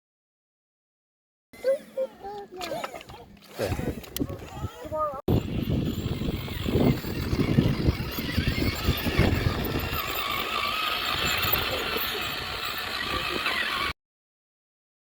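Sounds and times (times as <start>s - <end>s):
toy car electric motor whining: 3.8s - 14.0s.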